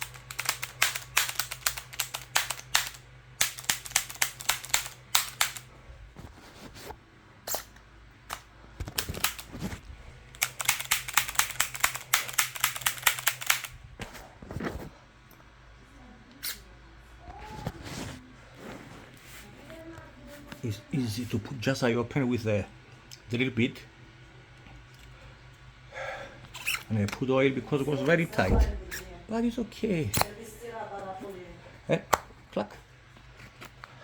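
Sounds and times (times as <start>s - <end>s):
mechanical clicks and clacks: 0.0s - 5.6s, 10.3s - 13.7s.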